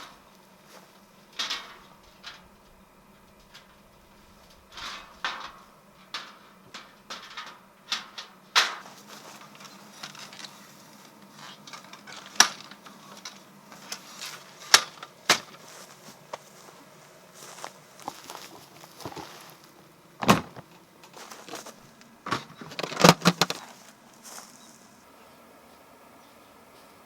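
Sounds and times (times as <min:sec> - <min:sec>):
faint steady hum: 0:00.0 - 0:27.0
objects clattering and knocking: 0:04.5 - 0:10.6, 0:18.1 - 0:23.9.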